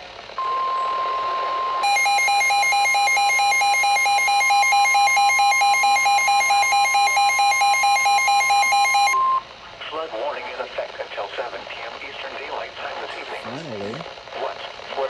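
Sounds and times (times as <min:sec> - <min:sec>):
steady warning alarm tone: 0:00.4 - 0:09.4.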